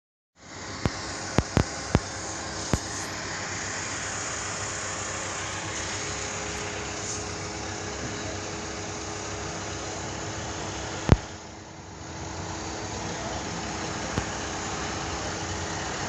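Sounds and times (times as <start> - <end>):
crane machinery running: 0.4 - 16.0.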